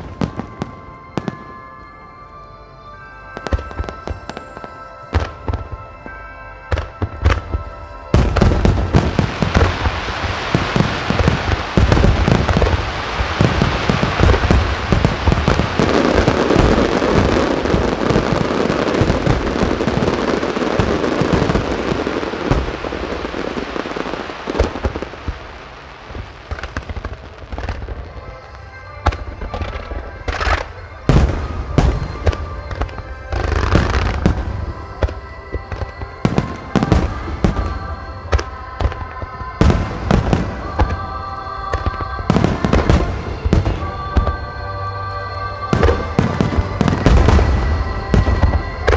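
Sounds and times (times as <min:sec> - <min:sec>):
music over loudspeakers: 0:03.4 - 0:25.1, 0:27.6 - 0:48.9
firework bursts and crackling: 0:06.7 - 0:48.9
firework booms: 0:08.1 - 0:28.0, 0:30.4 - 0:39.0, 0:39.6 - 0:44.6, 0:45.7 - 0:48.9.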